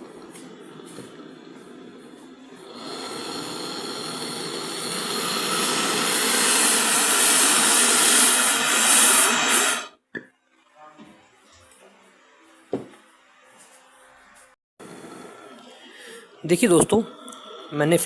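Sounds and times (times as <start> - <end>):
brazing torch hissing flame: 0.0 - 10.0, 14.8 - 18.0.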